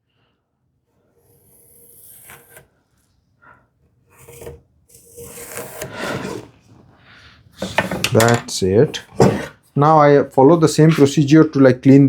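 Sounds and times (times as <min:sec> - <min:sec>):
marking tool scratching wood: 0:01.2 - 0:02.7
handling knocks: 0:07.6 - 0:09.5.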